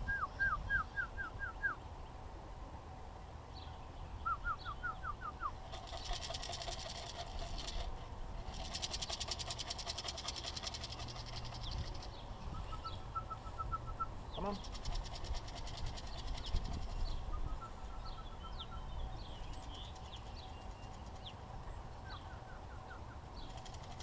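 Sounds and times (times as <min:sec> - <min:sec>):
fast clicking rattle: 0:05.6 - 0:12.2, 0:14.6 - 0:17.1, 0:19.4 - 0:21.4, 0:23.4 - 0:24.0
songbird trilling: 0:08.4 - 0:21.4.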